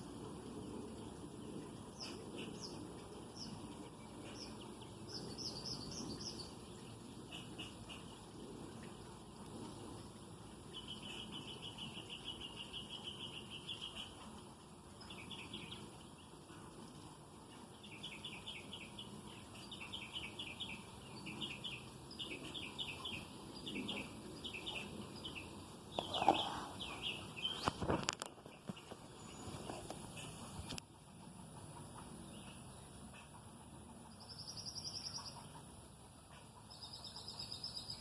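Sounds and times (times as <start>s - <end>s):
rustle: 0.0s - 38.0s
bird chirping in rapid trills: 17.5s - 27.8s, 31.5s - 35.8s, 36.5s - 38.0s.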